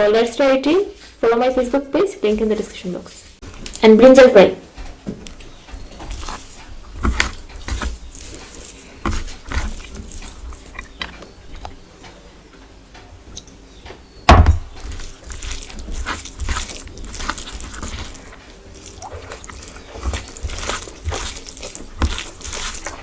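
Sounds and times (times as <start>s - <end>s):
chewing and wet mouth noises: 5.2s - 11.8s, 14.7s - 23.0s
knocks: 14.3s - 14.8s.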